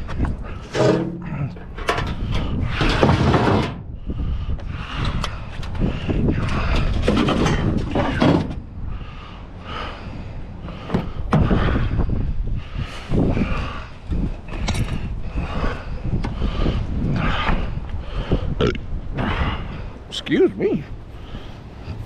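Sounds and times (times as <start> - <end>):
wind on microphone: 0.0 - 22.0
scrap metal clanking and scraping: 0.5 - 3.8, 6.6 - 8.6.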